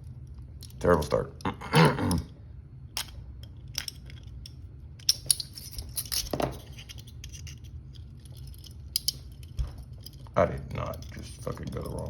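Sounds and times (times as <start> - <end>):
steady low hum: 0.0 - 12.0
handcuffs jingling: 3.0 - 12.0.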